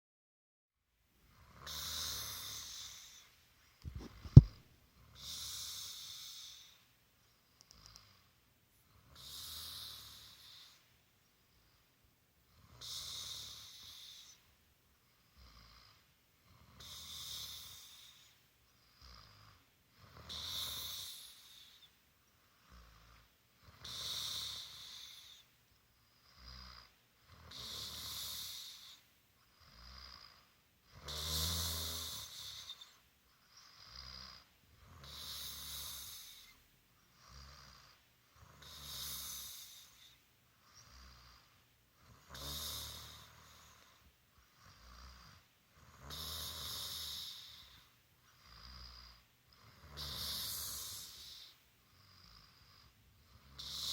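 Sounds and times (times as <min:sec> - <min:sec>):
soft breathing: 0:02.3 - 0:04.6.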